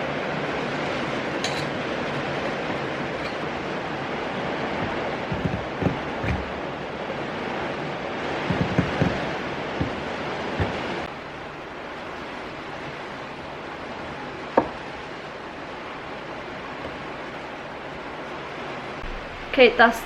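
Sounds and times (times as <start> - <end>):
heavy rain hissing: 0.0 - 20.0
tools knocking on wood: 4.8 - 6.5, 8.4 - 10.0, 10.6 - 10.9, 14.6 - 14.8.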